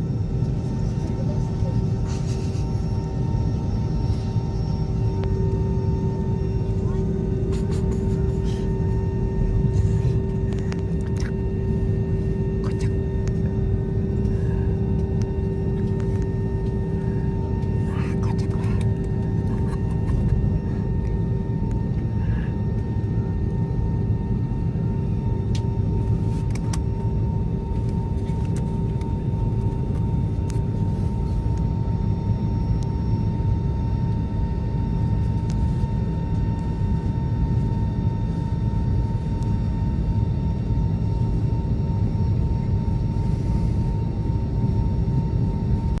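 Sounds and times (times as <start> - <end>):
constant hum tone: 0.0 - 46.0
jet engines and airflow rumble: 0.0 - 46.0.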